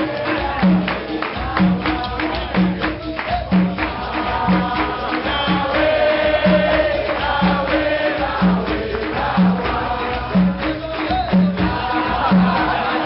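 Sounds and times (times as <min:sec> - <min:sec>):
percussion beat: 0:00.0 - 0:13.0
chanted singing: 0:04.0 - 0:10.4.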